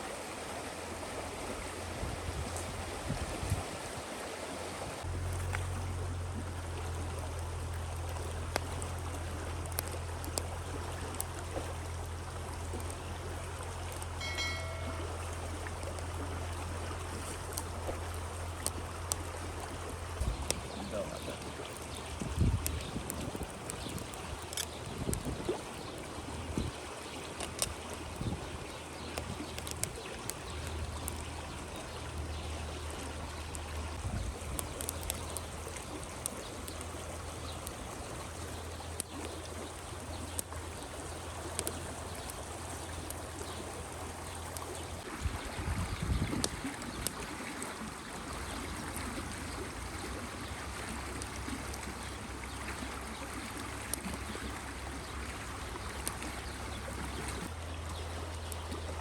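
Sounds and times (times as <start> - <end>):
campfire crackling: 4.9 - 59.0
river rushing: 14.1 - 22.1.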